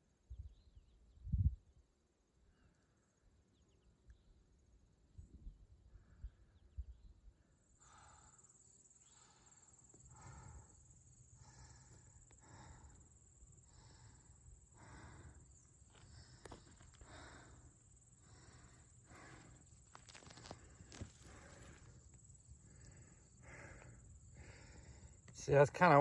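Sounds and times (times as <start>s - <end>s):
insect trill: 7.6s - 26.0s.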